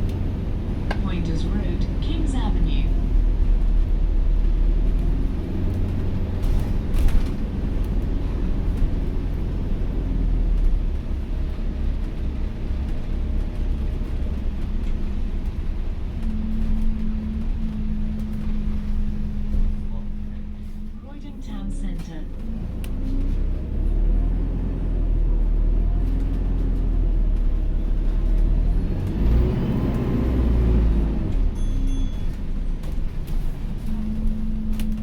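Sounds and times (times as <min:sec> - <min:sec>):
bus drivetrain rumble and hum: 0:00.0 - 0:35.0.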